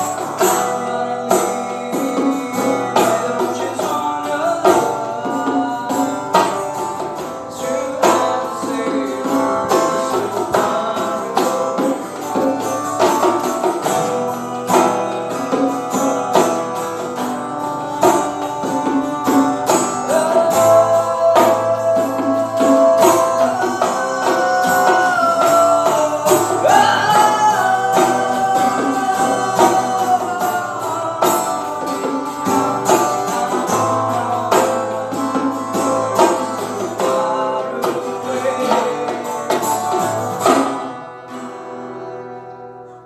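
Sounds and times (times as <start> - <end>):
percussion beat: 0.0 - 41.4
plucked strings: 0.0 - 43.0.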